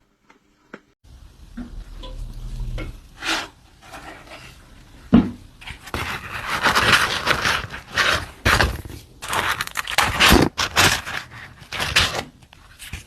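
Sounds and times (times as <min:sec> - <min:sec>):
utensils scraping: 0:01.6 - 0:08.6.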